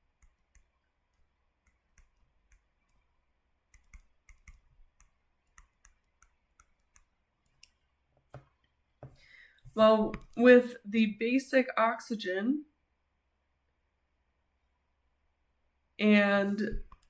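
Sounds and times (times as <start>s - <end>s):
faint irregular clicks: 0.0s - 10.4s.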